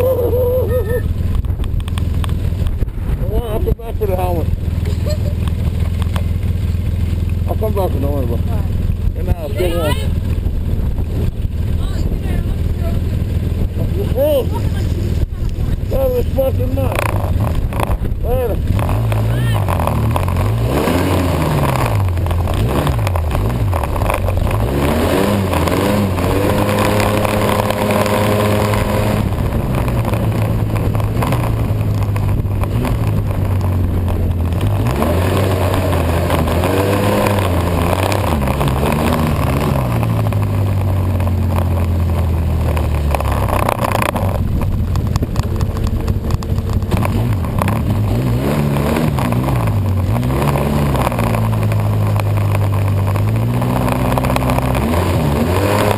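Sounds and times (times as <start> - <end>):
snowmobile engine revving: 0.0 - 1.2, 7.4 - 55.9.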